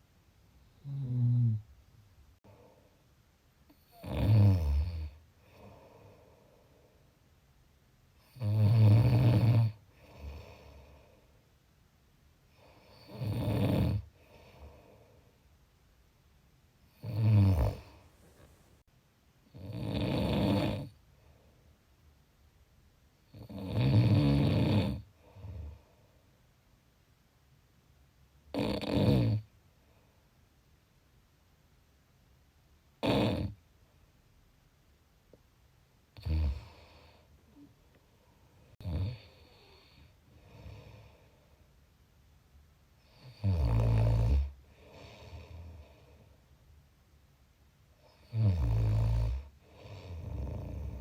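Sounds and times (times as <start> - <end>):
soft breaths: 0.5 - 4.0, 5.1 - 7.5, 9.8 - 11.7, 14.0 - 15.7, 16.8 - 18.9, 20.9 - 22.1, 25.0 - 26.6, 36.1 - 41.9, 44.4 - 46.6
person snoring: 0.8 - 1.6, 3.8 - 6.4, 12.8 - 14.1, 16.9 - 18.5, 19.5 - 20.9, 23.4 - 25.8, 38.8 - 41.1, 48.2 - 51.0.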